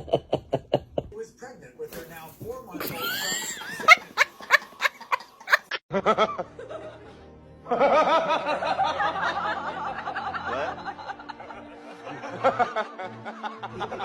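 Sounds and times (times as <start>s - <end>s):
bursts of laughter: 2.8s - 7.0s.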